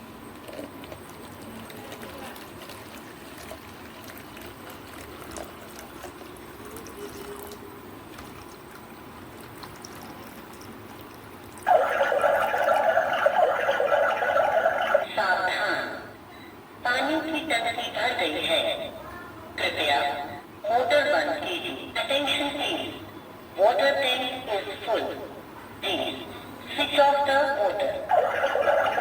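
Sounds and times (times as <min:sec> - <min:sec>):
water pouring into a tank: 0:00.9 - 0:13.6
loud high-pitched sound: 0:11.7 - 0:15.2, 0:28.1 - 0:29.0.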